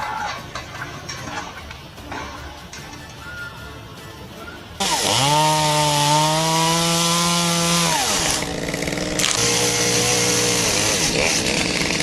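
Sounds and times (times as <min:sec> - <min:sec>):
chainsaw engine revving: 0:04.8 - 0:12.0.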